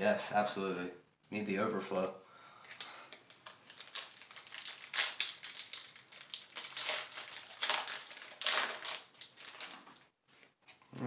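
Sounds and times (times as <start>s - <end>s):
foil wrapper crinkling and tearing: 2.6s - 10.1s.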